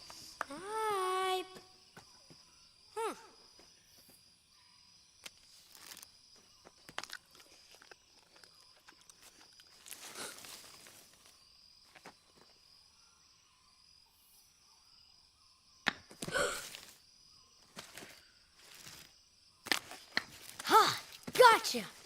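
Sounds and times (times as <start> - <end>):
high insect trill: 0.0 - 22.0.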